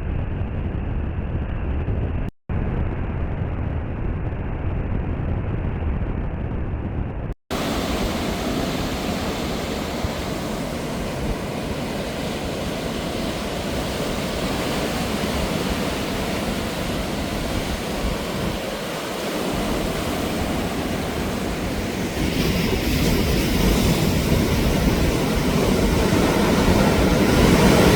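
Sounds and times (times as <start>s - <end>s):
sea waves washing onto beach: 7.5s - 27.9s.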